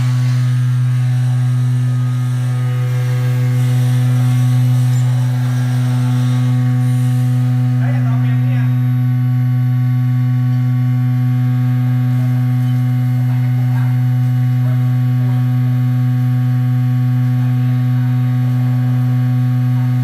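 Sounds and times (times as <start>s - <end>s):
vibrating machine humming: 0.0s - 20.0s.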